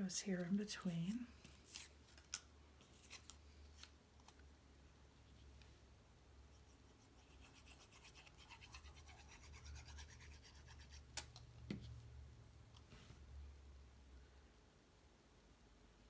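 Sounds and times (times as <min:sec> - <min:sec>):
scratchy rubbing on cardstock: 0:06.6 - 0:11.1.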